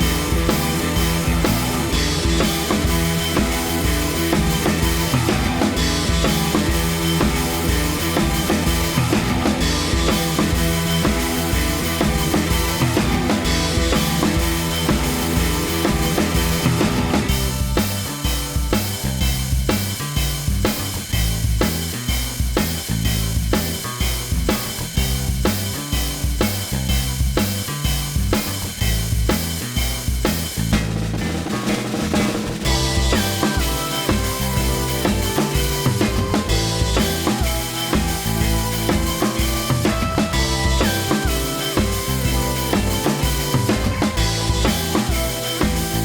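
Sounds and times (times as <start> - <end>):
bass line: 0.0 - 46.0
drum kit beat: 0.0 - 46.0
sustained instrumental notes: 32.6 - 46.0.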